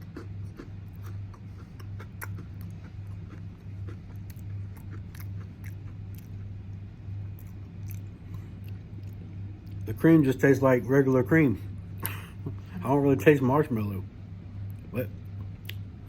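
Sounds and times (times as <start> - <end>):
chewing a cookie: 0.0 - 10.0, 14.6 - 16.0
steady low hum: 0.0 - 16.0.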